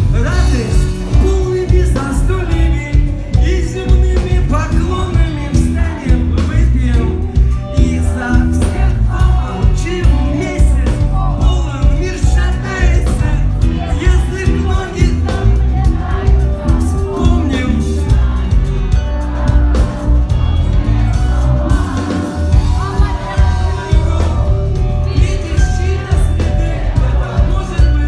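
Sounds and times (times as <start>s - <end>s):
pop-rock music with singing: 0.0s - 28.0s
crowd shouting and whooping: 4.9s - 28.0s.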